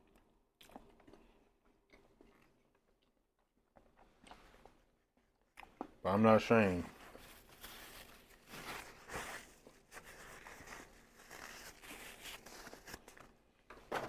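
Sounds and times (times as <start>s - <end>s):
person chewing food: 0.0s - 6.0s.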